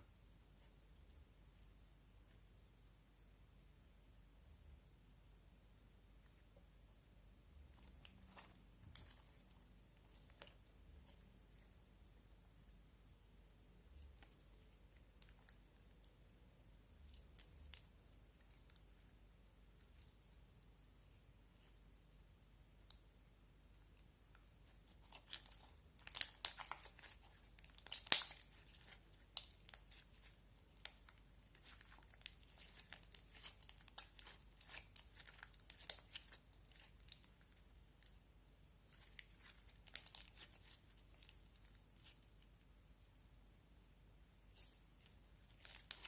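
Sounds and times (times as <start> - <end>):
slime crackling and popping: 24.8 - 38.2, 38.9 - 42.2, 44.5 - 46.0.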